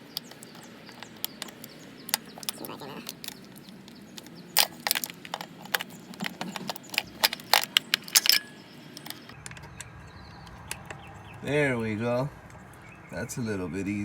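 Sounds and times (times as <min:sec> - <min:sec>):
hand tools clinking on metal: 0:00.0 - 0:09.9.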